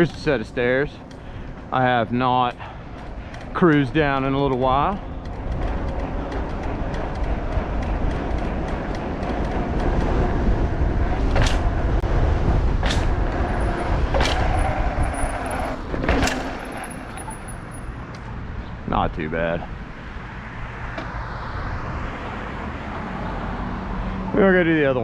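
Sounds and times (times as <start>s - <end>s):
tyres and wind rumbling: 0.0s - 25.0s.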